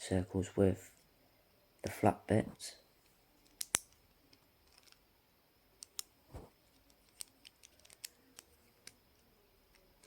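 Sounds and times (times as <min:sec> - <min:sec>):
plastic pieces clicking: 0:03.4 - 0:05.0, 0:06.7 - 0:09.0.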